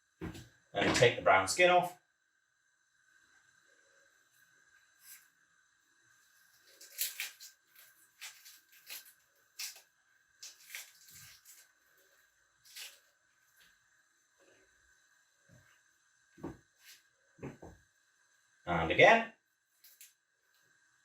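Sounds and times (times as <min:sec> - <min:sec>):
onion skin crackling: 0:06.1 - 0:13.8, 0:19.8 - 0:20.2.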